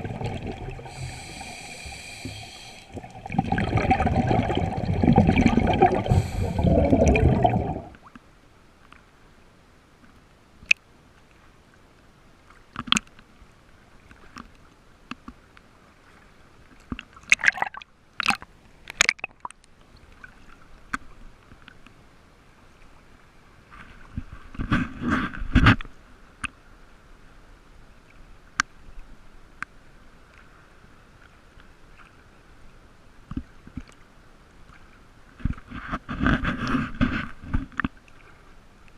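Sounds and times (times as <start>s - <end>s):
bubbling or splashing: 0.0s - 8.0s, 17.3s - 18.4s
water gurgling and sloshing: 0.0s - 8.5s, 33.2s - 38.9s.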